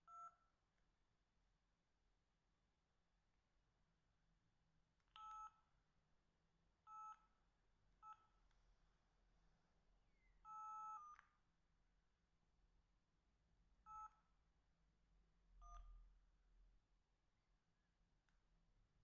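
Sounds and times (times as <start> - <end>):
phone keypad beeps: 5.2 - 5.6, 10.4 - 11.4, 13.9 - 14.3.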